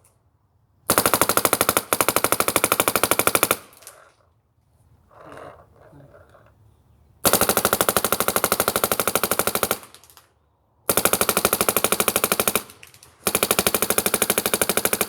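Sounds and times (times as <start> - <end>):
paintball marker rapid firing: 10.9 - 15.0.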